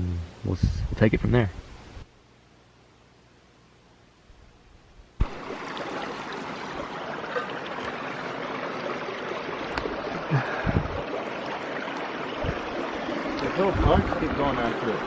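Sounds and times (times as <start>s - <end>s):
creek flowing: 5.2s - 15.0s.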